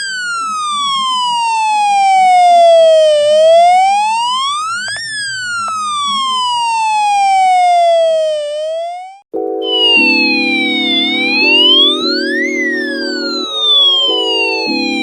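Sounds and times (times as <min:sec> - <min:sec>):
electronic siren wailing: 0:00.0 - 0:15.0
electronic tone pattern: 0:09.6 - 0:15.0.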